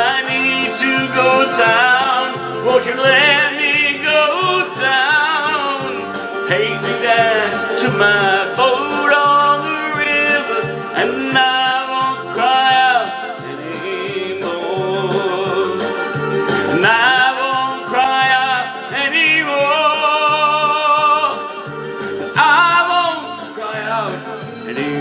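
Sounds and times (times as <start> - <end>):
instrumental accompaniment: 0.0 - 25.0
person singing with vibrato: 0.0 - 25.0.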